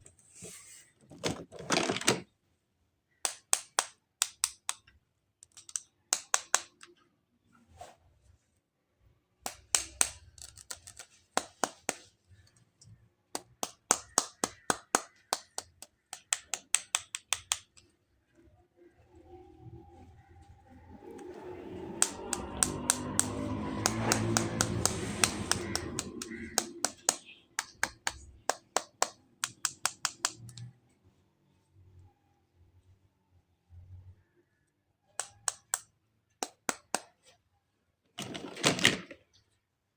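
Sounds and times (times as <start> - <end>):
toys and packaging clicking: 1.1 - 2.3, 3.2 - 7.0, 9.5 - 17.9, 21.2 - 30.8, 35.2 - 37.4.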